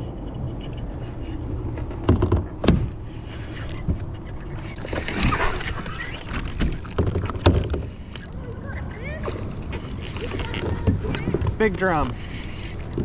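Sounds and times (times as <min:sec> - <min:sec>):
water splashing and rushing: 0:04.7 - 0:08.4.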